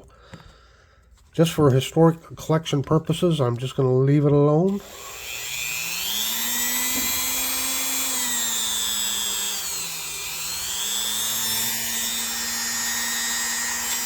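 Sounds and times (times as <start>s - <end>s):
polishing tool motor whine: 4.8s - 14.0s.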